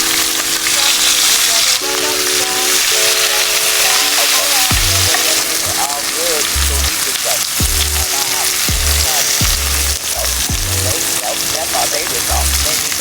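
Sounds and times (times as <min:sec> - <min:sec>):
fat sizzling and spitting in a pot: 0:00.0 - 0:13.0.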